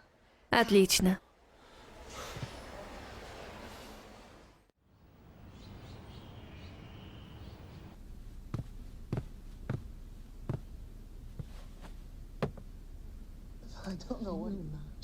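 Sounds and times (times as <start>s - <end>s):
footsteps: 8.5s - 10.7s, 11.3s - 12.6s.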